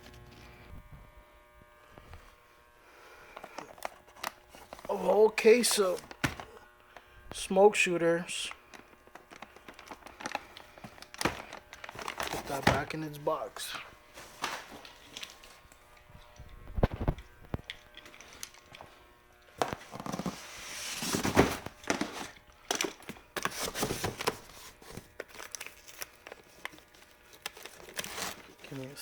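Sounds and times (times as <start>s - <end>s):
cardboard rustling and scraping: 3.4s - 6.6s, 8.7s - 15.6s, 19.6s - 29.0s
cardboard boxes knocking and thudding: 19.6s - 22.4s.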